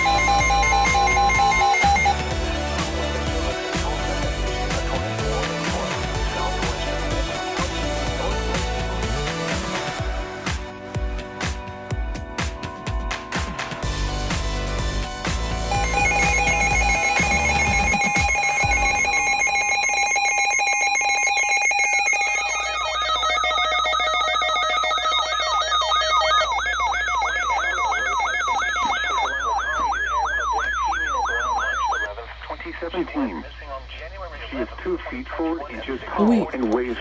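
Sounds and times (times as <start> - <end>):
warbling alert tone: 0.0 - 2.3, 15.7 - 32.1
electronic attention tones: 0.0 - 4.3, 15.7 - 32.1.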